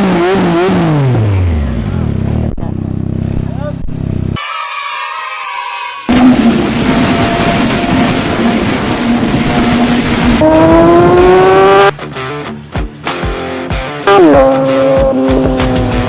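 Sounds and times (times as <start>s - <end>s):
motorcycle engine revving: 0.0s - 4.4s, 6.1s - 12.0s, 14.0s - 16.0s
wind noise: 6.1s - 11.4s.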